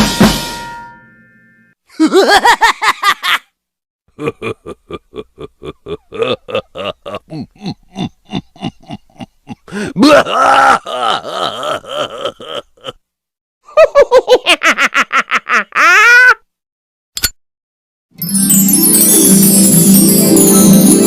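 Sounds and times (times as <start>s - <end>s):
cartoon laughter: 1.9s - 3.5s, 4.2s - 13.0s, 13.7s - 16.4s.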